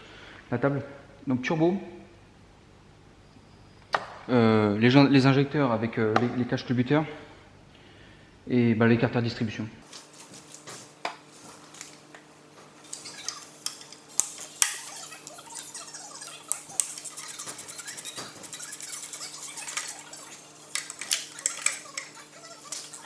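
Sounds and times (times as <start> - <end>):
fast even ticking: 13.6 - 23.0.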